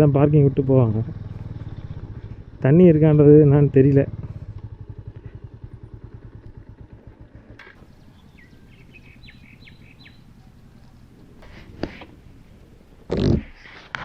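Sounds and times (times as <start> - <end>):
motorcycle engine running: 0.0 - 14.0
bird chirps: 7.8 - 13.7.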